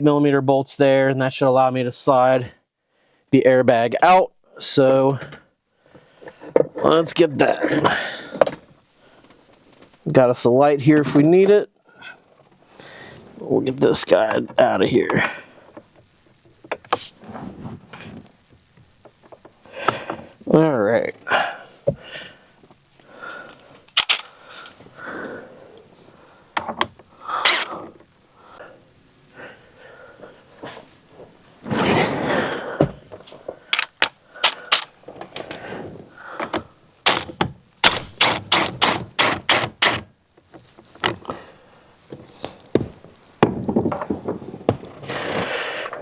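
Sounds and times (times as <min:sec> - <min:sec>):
scraping rustle: 0:12.2 - 0:19.6, 0:30.2 - 0:33.8, 0:38.2 - 0:46.0
evenly spaced clicks: 0:23.9 - 0:24.8, 0:33.8 - 0:34.9
hand tools clicking and knocking: 0:23.9 - 0:24.8, 0:26.6 - 0:27.9, 0:32.8 - 0:35.5, 0:36.4 - 0:41.4.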